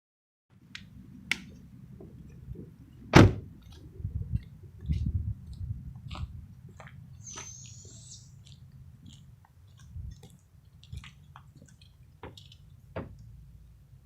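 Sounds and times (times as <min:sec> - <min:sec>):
low rumble: 0:01.0 - 0:07.2
loud thump: 0:03.2 - 0:03.5.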